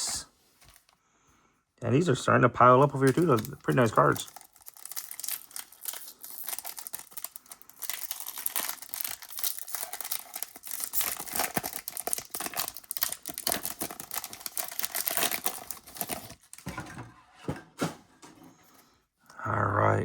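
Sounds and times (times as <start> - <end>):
card pack wrapper crinkling: 0.6 - 1.0, 2.8 - 16.7.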